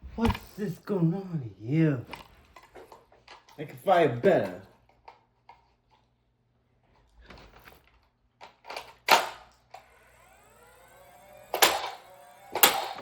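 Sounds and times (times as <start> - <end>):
toy blaster clicks: 8.7 - 13.0
toy blaster firing snap: 9.1 - 13.0.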